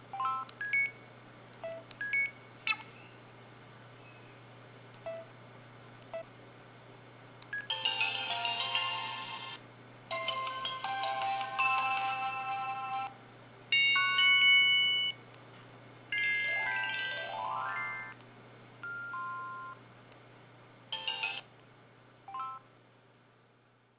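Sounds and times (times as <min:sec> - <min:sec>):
phone electronic chimes: 0:13.8 - 0:15.2.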